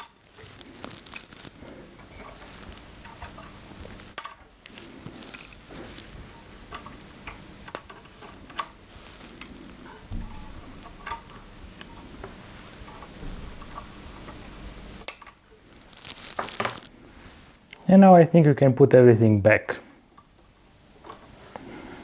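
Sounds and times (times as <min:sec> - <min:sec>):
hand tools clicking and tapping: 0:02.0 - 0:14.4.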